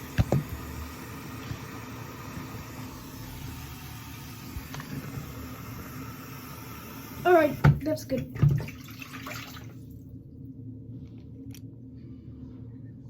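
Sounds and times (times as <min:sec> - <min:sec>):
tap water filling container: 0:00.0 - 0:09.8.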